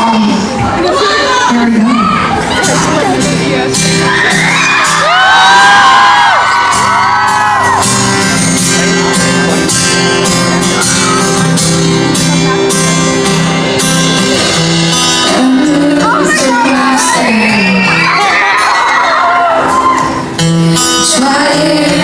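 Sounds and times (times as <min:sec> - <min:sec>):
live band playing: 0:00.0 - 0:22.0
fans screaming: 0:03.8 - 0:09.1, 0:10.6 - 0:11.6, 0:16.0 - 0:20.4.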